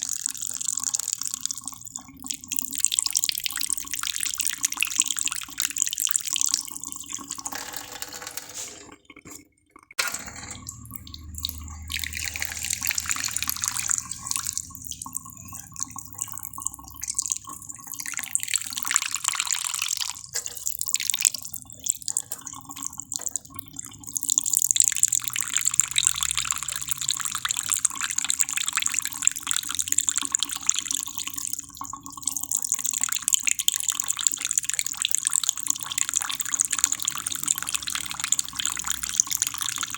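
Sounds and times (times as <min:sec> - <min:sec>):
water running and dripping: 0:10.6 - 0:39.9.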